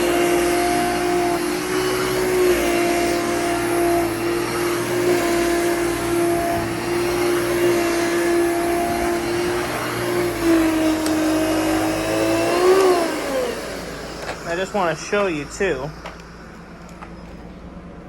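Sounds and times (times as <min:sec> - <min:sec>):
vacuum cleaner running: 0:00.0 - 0:18.0.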